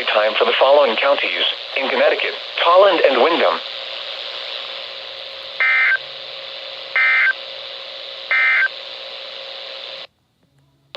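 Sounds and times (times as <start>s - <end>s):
radio static hiss: 0.0s - 10.1s
buzzy digital data tone bursts: 5.6s - 6.0s, 6.9s - 7.4s, 8.3s - 8.8s.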